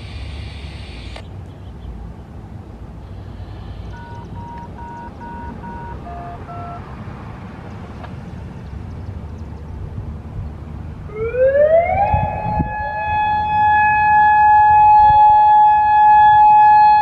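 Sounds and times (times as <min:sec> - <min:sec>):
outdoor warning siren: 0:03.9 - 0:06.8, 0:11.1 - 0:17.0
short beeps: 0:03.9 - 0:06.8.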